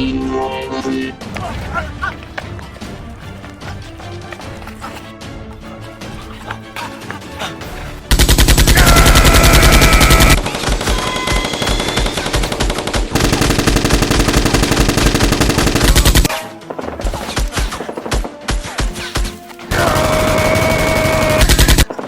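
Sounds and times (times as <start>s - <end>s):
rapid automatic gunfire: 8.1s - 16.3s, 19.7s - 21.9s.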